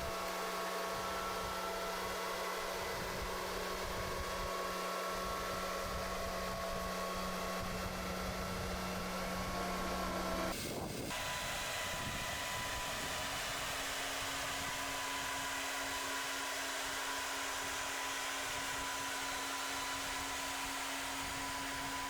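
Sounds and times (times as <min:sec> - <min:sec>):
heavy machinery humming: 0:00.0 - 0:22.0
higher machine hum: 0:00.0 - 0:22.0.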